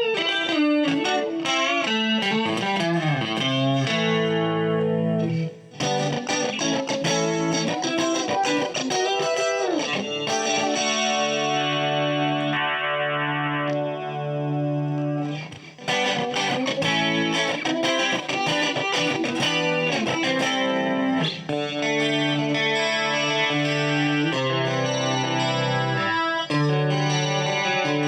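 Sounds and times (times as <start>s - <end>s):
clean electric guitar: 0.0s - 28.0s.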